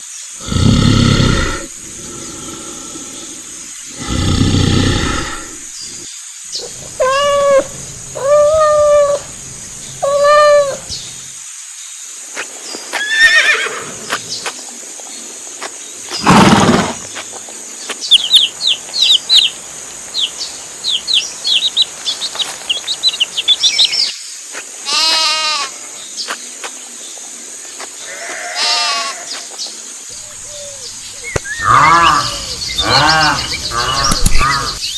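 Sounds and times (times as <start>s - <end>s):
loud rough animal calls: 0.4s - 6.0s, 6.6s - 11.3s, 18.1s - 24.0s, 30.2s - 34.9s
animal bleating: 6.6s - 11.2s, 24.9s - 25.7s, 28.0s - 29.4s, 30.2s - 34.8s.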